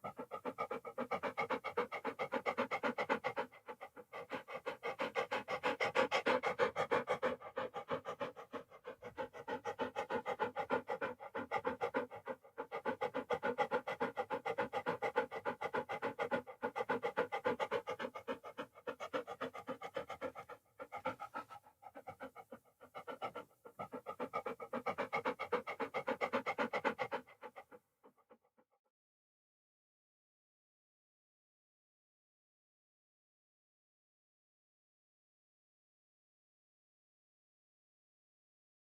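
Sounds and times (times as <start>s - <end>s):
dog panting: 0.0s - 28.5s.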